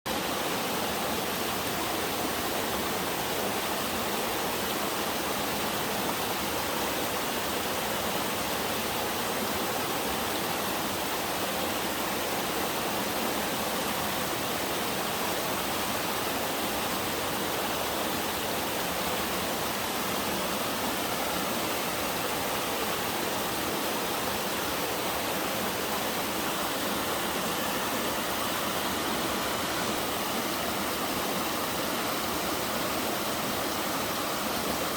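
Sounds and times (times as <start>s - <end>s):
waterfall rushing over rock: 0.1s - 34.9s.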